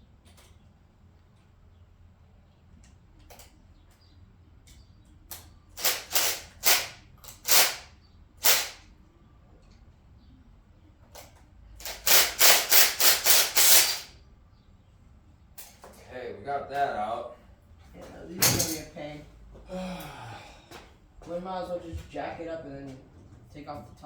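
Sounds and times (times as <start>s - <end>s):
hand tool scraping rusted fastener: 11.9s - 14.1s.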